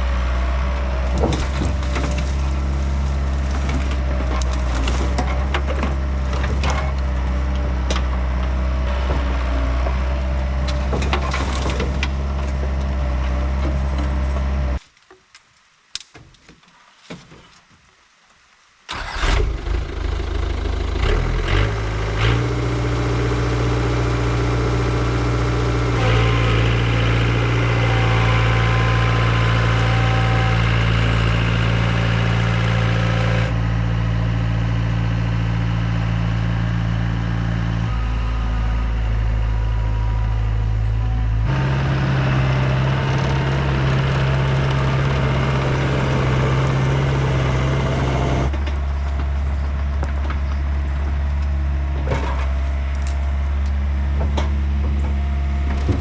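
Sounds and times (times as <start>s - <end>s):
excavator diesel engine running: 0.0s - 14.8s, 18.9s - 56.0s
wood cracking and splintering: 0.6s - 17.8s, 41.5s - 56.0s.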